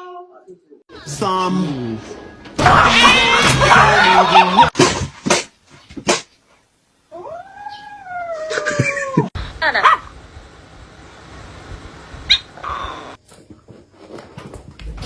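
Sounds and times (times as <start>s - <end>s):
cat yowling: 2.6s - 3.9s, 7.1s - 9.3s.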